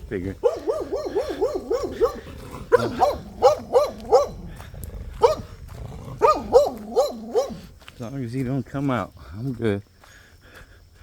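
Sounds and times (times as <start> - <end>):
dog barking: 0.4 - 4.4, 5.2 - 5.5, 6.2 - 7.7.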